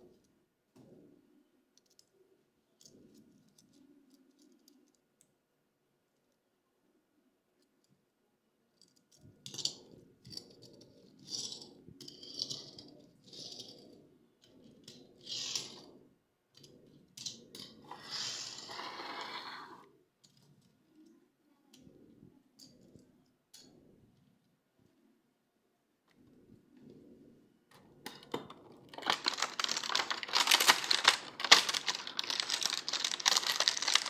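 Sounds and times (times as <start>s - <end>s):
packaging rustling and rattling: 28.4s - 34.0s
scratchy crinkling: 28.7s - 34.0s.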